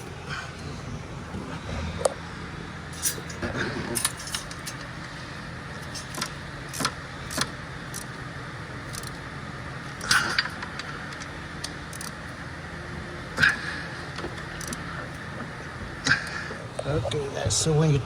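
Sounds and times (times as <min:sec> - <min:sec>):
steady low hum: 0:00.0 - 0:18.0
metal tools clinking: 0:02.9 - 0:16.5.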